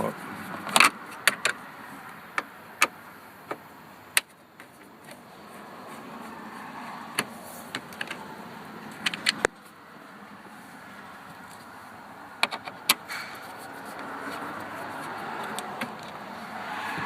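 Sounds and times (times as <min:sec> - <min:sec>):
screwdriver clicks and taps on plastic: 0:15.4 - 0:16.2.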